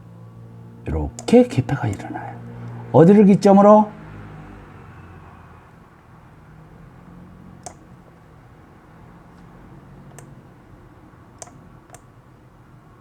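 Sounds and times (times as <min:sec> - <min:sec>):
faint room hum: 0:00.0 - 0:13.0
computer mouse clicks: 0:07.6 - 0:07.9, 0:10.1 - 0:10.4, 0:11.4 - 0:12.1.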